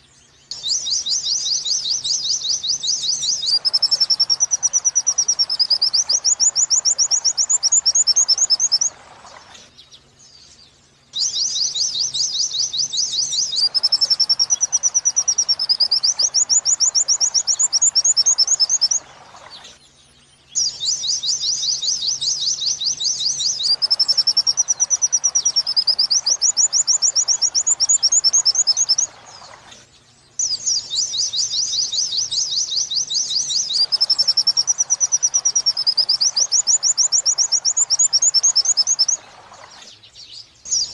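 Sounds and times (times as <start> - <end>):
bird trilled chatters: 0.0 - 10.6, 11.2 - 19.9, 20.6 - 40.9
bird wavering whistled notes: 0.0 - 19.9, 20.5 - 40.9.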